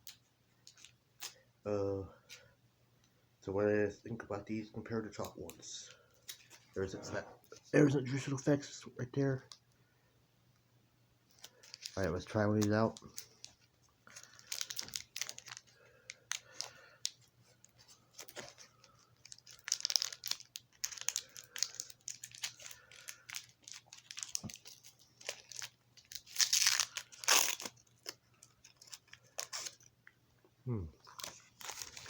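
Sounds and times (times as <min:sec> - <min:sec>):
faint steady hum: 0:00.0 - 0:32.0
paper wrapper tearing and crinkling: 0:11.3 - 0:29.9, 0:31.0 - 0:32.0.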